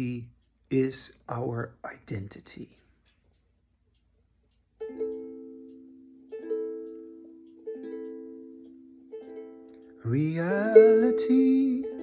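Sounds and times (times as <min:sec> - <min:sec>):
plucked string chords ringing: 0:04.8 - 0:12.0.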